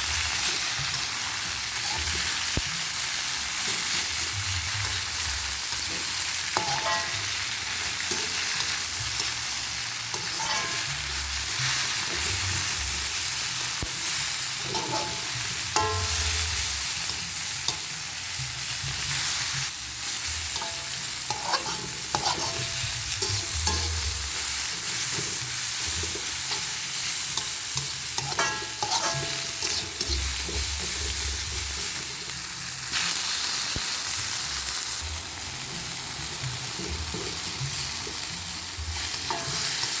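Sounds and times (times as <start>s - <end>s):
food sizzling in hot oil: 0.0s - 40.0s
spatula scraping and knocking pan: 6.6s - 7.2s, 10.2s - 11.0s, 14.6s - 16.4s, 20.6s - 32.2s, 35.7s - 40.0s.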